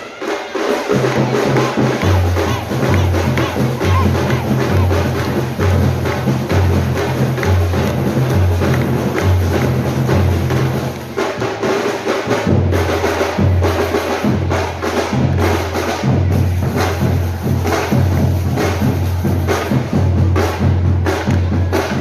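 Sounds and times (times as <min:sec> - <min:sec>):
loud music with heavy bass: 0:01.2 - 0:07.9.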